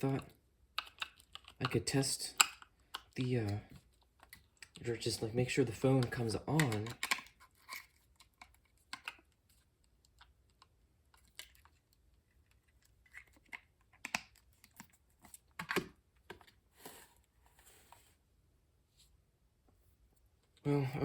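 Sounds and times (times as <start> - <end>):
plastic phone handset clicking: 6.0 - 7.3.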